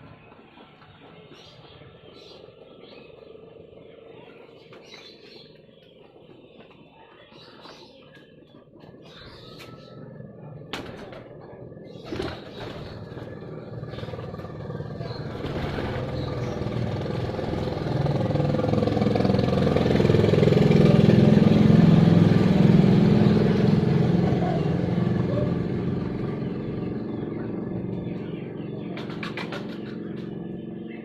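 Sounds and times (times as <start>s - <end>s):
motor vehicle passing by: 8.6s - 31.0s.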